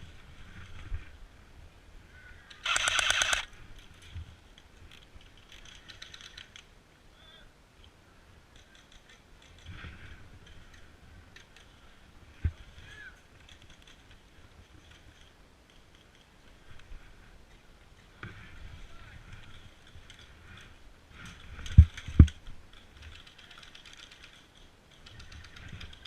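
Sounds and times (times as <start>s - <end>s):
faint clicks: 2.5s - 6.7s, 7.8s - 9.8s, 19.3s - 26.0s
airsoft gun rapid burst: 2.6s - 3.5s.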